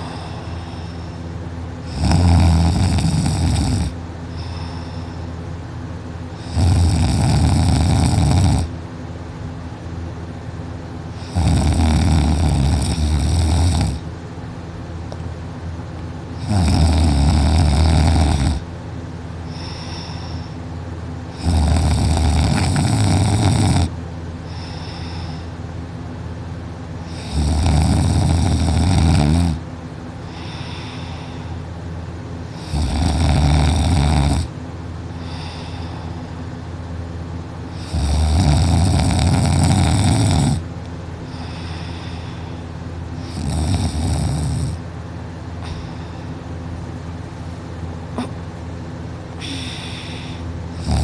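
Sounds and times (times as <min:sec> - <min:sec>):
person snoring heavily: 0:00.0 - 0:05.3, 0:06.4 - 0:08.8, 0:11.1 - 0:14.1, 0:16.4 - 0:18.7, 0:19.5 - 0:20.6, 0:21.3 - 0:25.6, 0:27.0 - 0:31.7, 0:32.5 - 0:34.6, 0:35.2 - 0:36.3, 0:37.7 - 0:40.7, 0:41.3 - 0:44.8, 0:45.6 - 0:46.4, 0:49.4 - 0:51.0
steady low hum: 0:00.0 - 0:51.0.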